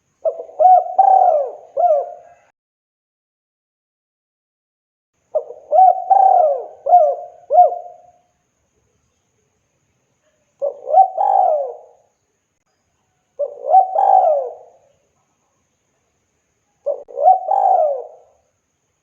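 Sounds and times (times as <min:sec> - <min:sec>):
dove cooing: 0:00.2 - 0:02.5, 0:05.4 - 0:08.2, 0:10.6 - 0:12.1, 0:13.4 - 0:14.9, 0:16.8 - 0:18.4.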